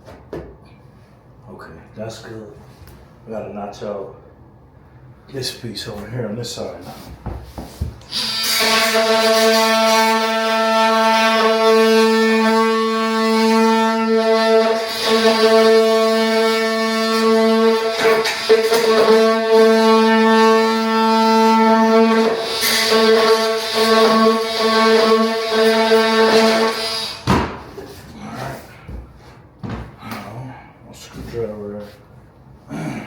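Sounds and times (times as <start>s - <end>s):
oscillating multi-tool buzzing: 8.1s - 27.2s.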